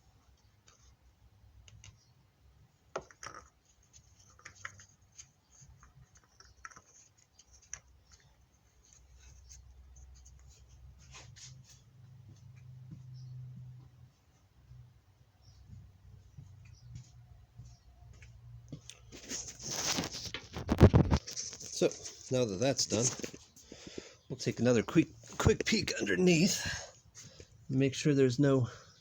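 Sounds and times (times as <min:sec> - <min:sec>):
small clicks and taps: 0:01.6 - 0:02.0.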